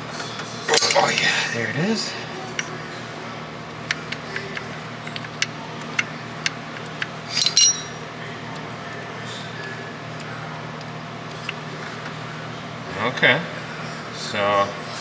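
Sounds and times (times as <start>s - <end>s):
metal tool clicks and clinks: 0.7s - 1.4s, 2.5s - 2.8s, 3.8s - 8.2s
ringing metal clink: 4.0s - 8.4s.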